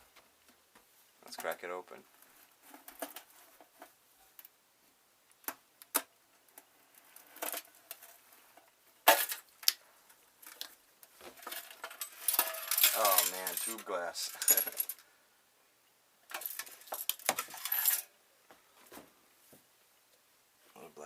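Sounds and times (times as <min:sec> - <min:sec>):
metal scraping clatter: 0:11.4 - 0:14.9.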